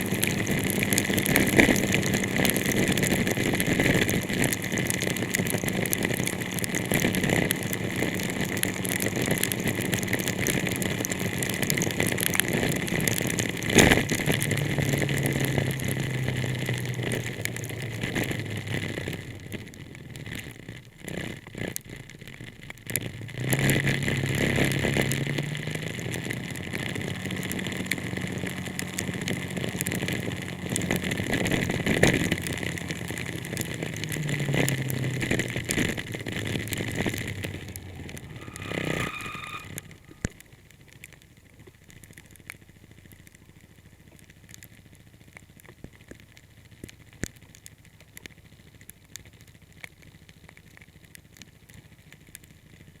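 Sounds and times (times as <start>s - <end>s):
car engine: 0.0s - 20.6s, 22.9s - 40.5s
road noise: 0.0s - 43.1s
heavy rain on car: 0.0s - 53.0s.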